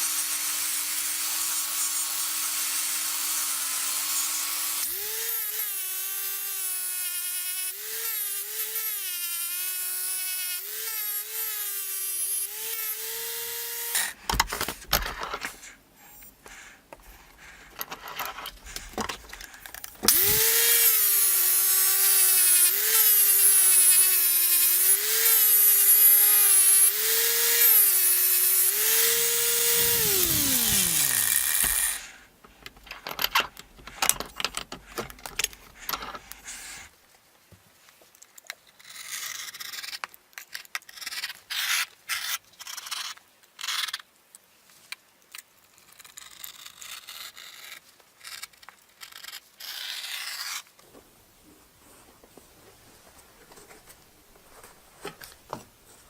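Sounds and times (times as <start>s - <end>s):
power tool motor whine: 0.0s - 14.2s, 20.0s - 32.1s
clicks and handling noise: 13.9s - 20.6s, 29.2s - 36.4s, 50.8s - 56.0s.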